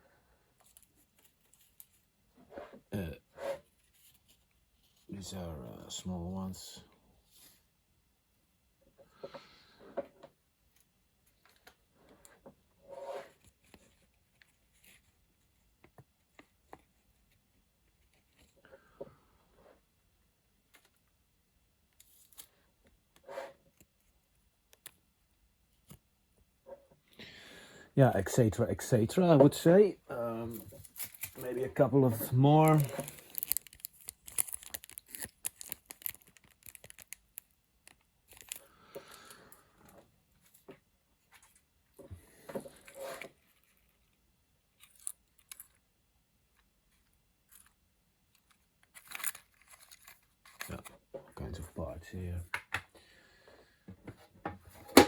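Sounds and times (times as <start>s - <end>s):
faint clicks of small parts: 23.6s - 25.1s, 30.5s - 45.9s, 46.5s - 51.0s.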